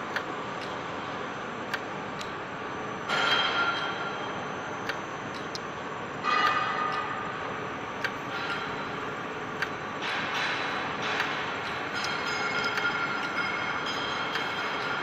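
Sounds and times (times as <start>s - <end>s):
sharp machine clicks: 8.0s - 15.0s.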